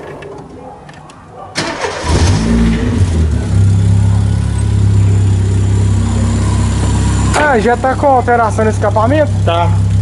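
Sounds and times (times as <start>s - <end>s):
car engine starting and idling: 1.6s - 10.0s.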